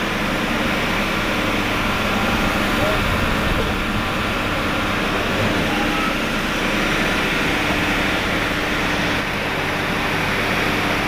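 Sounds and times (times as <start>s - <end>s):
diesel engine running: 0.0s - 11.0s.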